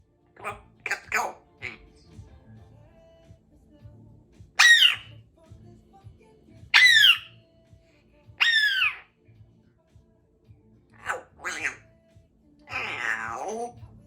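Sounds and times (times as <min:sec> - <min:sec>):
parrot whistled squawks: 0:04.6 - 0:05.1, 0:06.7 - 0:07.3, 0:08.4 - 0:09.1, 0:11.0 - 0:11.8, 0:12.7 - 0:13.6.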